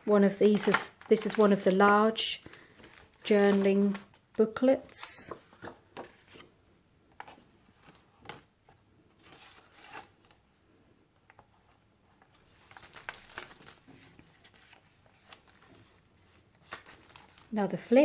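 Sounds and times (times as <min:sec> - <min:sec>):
paper pages rustling: 0:00.5 - 0:01.8, 0:02.4 - 0:04.2, 0:04.9 - 0:06.5, 0:07.1 - 0:10.4, 0:11.3 - 0:17.5.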